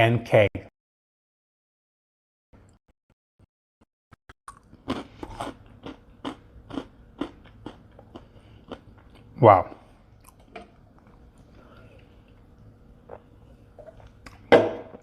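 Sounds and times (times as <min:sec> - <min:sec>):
person chewing crunchy pretzels: 0:04.5 - 0:14.5.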